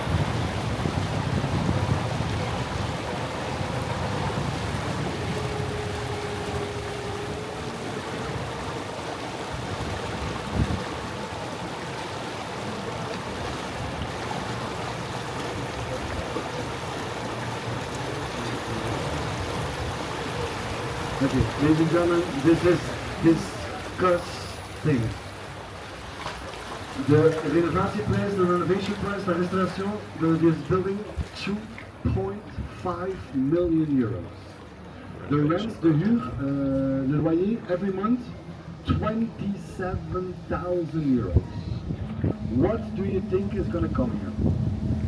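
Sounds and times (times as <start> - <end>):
wind on microphone: 0.0 - 21.8, 39.8 - 45.0
boat motor hum: 0.0 - 45.0
water wash: 0.0 - 45.0.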